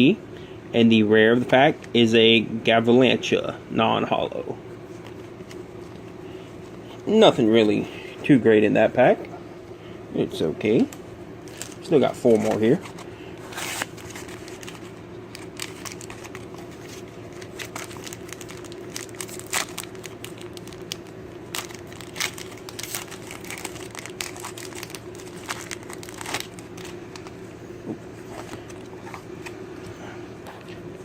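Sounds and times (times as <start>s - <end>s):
foil wrapper crinkling and tearing: 11.5s - 27.4s.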